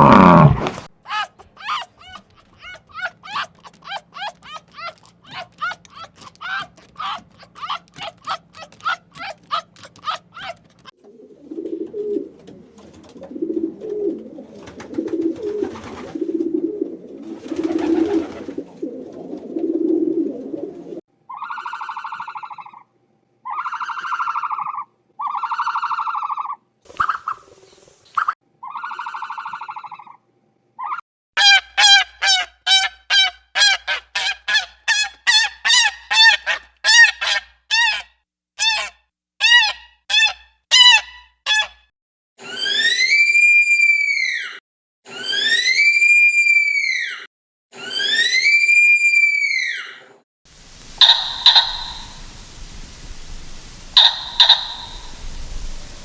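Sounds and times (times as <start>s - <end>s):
long even pitched animal calls: 0.0s - 10.6s, 31.4s - 41.8s, 51.0s - 52.4s, 54.0s - 55.4s
short pitched animal calls: 0.0s - 10.6s, 30.8s - 41.8s, 51.0s - 52.3s, 54.0s - 55.2s
low pulsing grunting animal calls: 0.0s - 10.8s.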